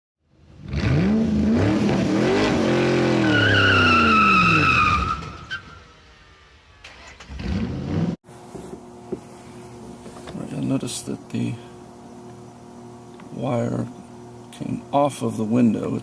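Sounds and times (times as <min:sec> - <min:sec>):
car engine revving: 0:00.5 - 0:05.5, 0:06.2 - 0:08.2
tyre squeal: 0:02.9 - 0:06.0.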